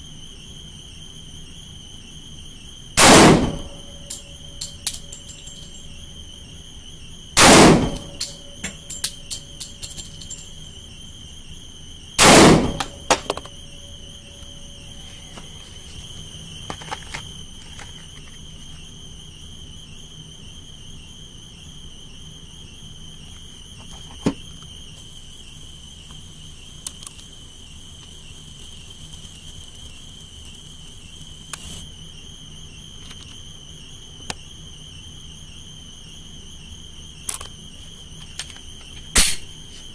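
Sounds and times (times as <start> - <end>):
pistol shots with echo: 3.0 - 3.9, 7.4 - 8.4, 12.2 - 13.3.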